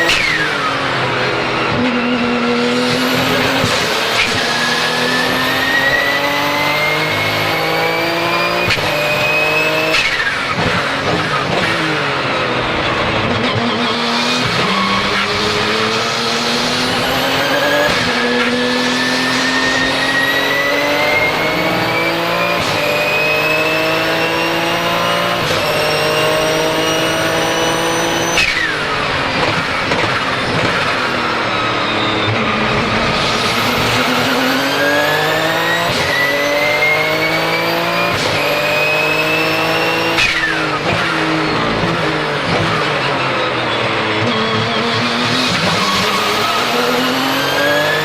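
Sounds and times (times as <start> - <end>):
race car engine accelerating: 0.0 - 48.0
turbo whistle: 17.3 - 23.7, 31.5 - 37.8.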